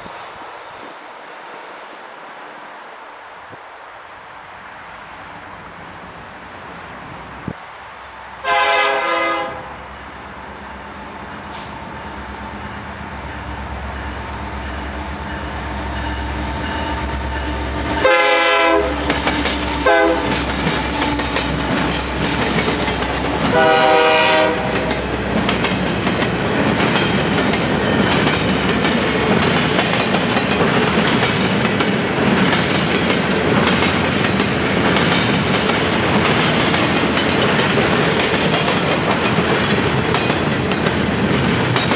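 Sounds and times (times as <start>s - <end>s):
train rail noise: 0.0s - 41.9s
train air horn blasts: 8.4s - 9.8s, 18.0s - 19.1s, 19.8s - 20.4s, 23.4s - 24.9s.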